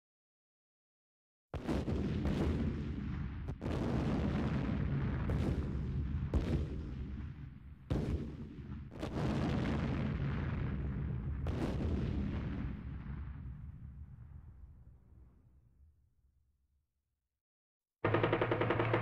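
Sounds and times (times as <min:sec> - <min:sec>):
heavy gunfire blasts with rumble: 0:01.6 - 0:14.8, 0:18.0 - 0:19.0.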